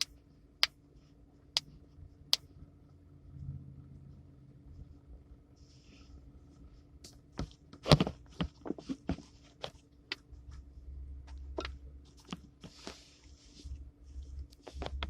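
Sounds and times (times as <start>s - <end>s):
low rumble: 2.6s - 5.4s.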